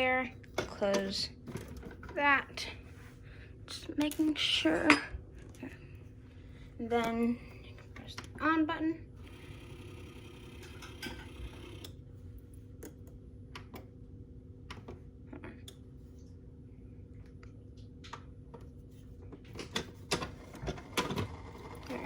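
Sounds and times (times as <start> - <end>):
coffee maker humming: 9.0 - 12.4, 19.4 - 22.0.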